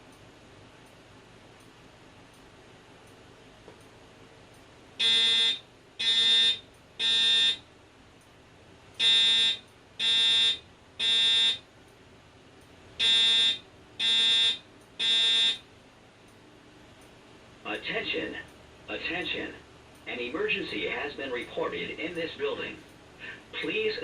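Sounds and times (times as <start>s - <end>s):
buzzy fire alarm blasts: 5.0s - 7.7s, 9.0s - 11.7s, 13.0s - 15.7s.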